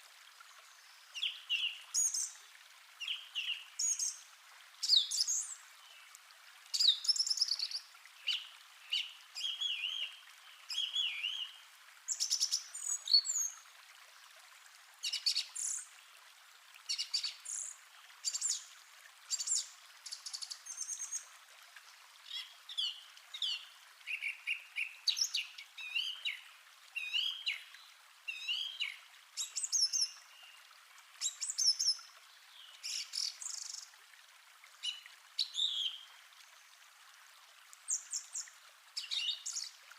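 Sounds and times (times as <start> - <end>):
faint steady hiss: 0.0 - 39.9
songbirds singing: 0.5 - 4.2, 4.8 - 13.6, 22.2 - 30.6, 34.8 - 36.1, 37.9 - 39.8.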